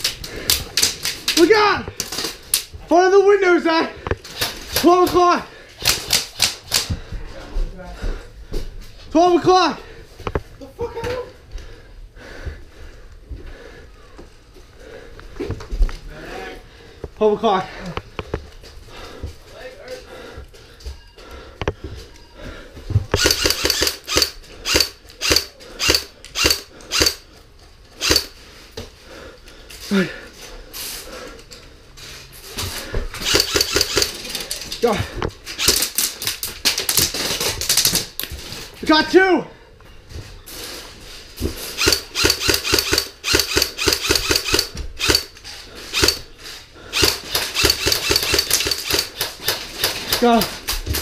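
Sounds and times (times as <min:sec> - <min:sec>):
airsoft gun firing: 0:23.2 - 0:27.2, 0:33.2 - 0:34.2, 0:41.8 - 0:45.3, 0:46.0 - 0:46.2, 0:47.0 - 0:50.2.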